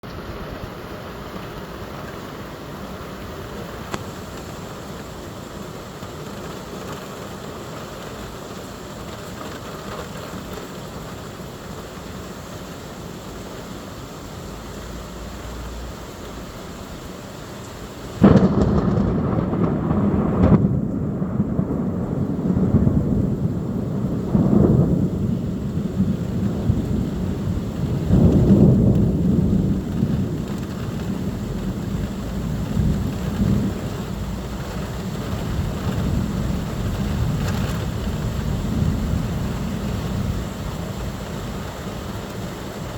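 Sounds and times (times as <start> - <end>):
steady rain: 0.0 - 42.9
thunderclap and rumbling thunder: 18.2 - 42.9.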